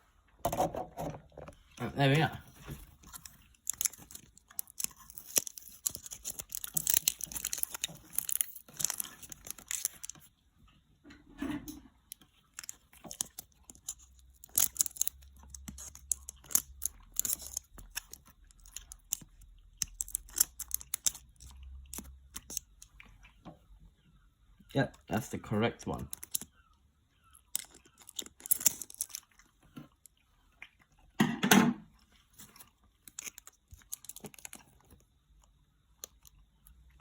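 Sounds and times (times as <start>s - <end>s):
packaging tearing and crinkling: 2.5s - 10.3s, 12.1s - 22.7s, 26.0s - 26.5s, 27.5s - 29.5s, 32.4s - 35.0s.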